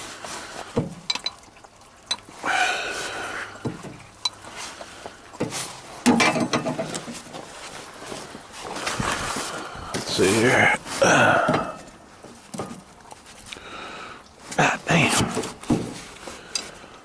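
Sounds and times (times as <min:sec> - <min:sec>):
person speaking: 0:10.0 - 0:11.8, 0:14.5 - 0:15.4.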